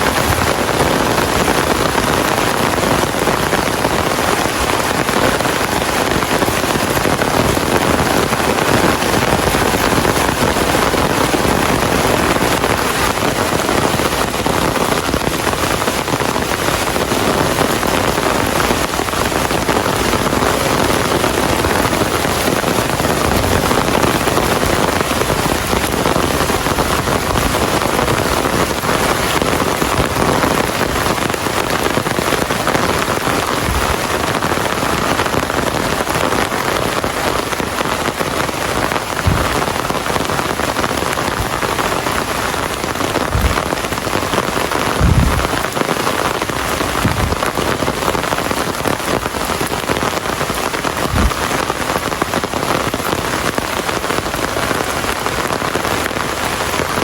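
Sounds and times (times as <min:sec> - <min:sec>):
steady rain hiss: 0:00.0 - 0:57.0
short low thumps: 0:33.6 - 0:34.0, 0:39.2 - 0:39.9, 0:43.2 - 0:44.1, 0:44.9 - 0:45.8, 0:47.0 - 0:47.6, 0:51.1 - 0:51.6.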